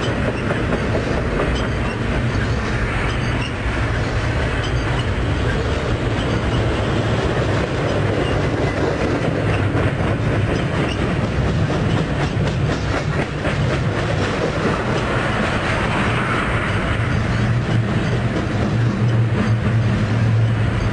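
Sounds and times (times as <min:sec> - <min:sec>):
train wheels clicking over track: 0:00.0 - 0:20.9.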